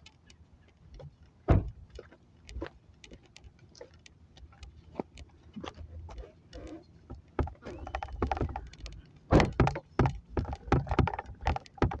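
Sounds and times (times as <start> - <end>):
objects knocking and clunking: 7.0 - 12.0.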